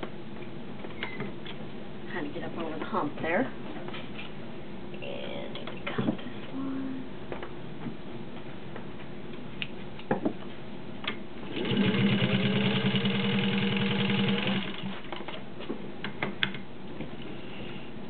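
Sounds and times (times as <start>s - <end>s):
sewing machine stitching: 11.4s - 15.1s.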